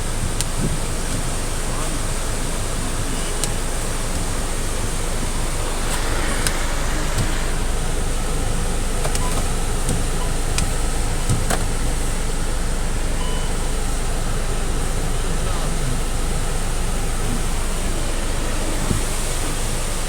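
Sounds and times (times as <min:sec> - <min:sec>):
water rushing: 0:00.0 - 0:20.0
wind buffeting microphone: 0:02.4 - 0:11.5
wind rushing: 0:03.9 - 0:09.1.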